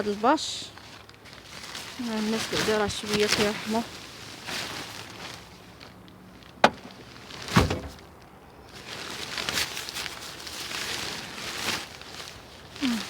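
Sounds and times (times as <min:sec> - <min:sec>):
soft rustling: 0:00.0 - 0:13.0
car door thump: 0:06.6 - 0:06.9, 0:07.5 - 0:08.0.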